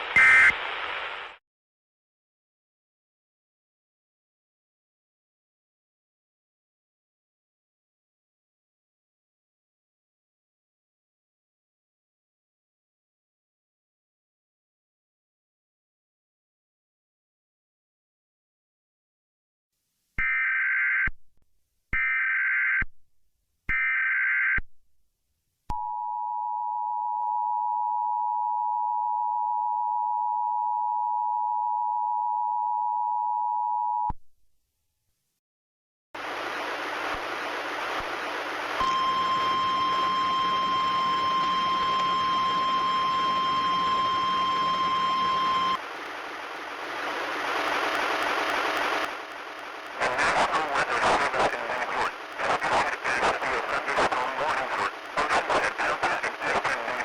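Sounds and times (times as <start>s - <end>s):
radio static: 0.0s - 1.4s, 36.2s - 57.0s
steady warning alarm tone: 38.8s - 45.8s
two-tone attention signal: 38.8s - 45.8s.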